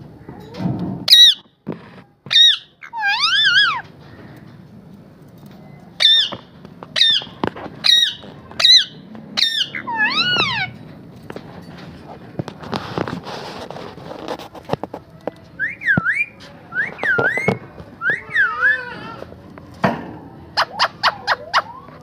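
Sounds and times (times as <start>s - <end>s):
parrot squawking: 1.1s - 1.4s, 2.3s - 3.8s, 6.0s - 10.8s, 18.0s - 19.1s.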